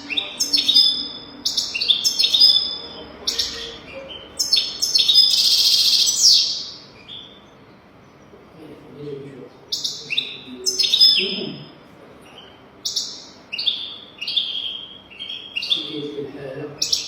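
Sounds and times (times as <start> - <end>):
buzzy bird trill: 0.0 - 8.3, 9.7 - 17.0
goldfinch twittering song: 0.0 - 8.3, 9.7 - 11.7, 12.8 - 16.2.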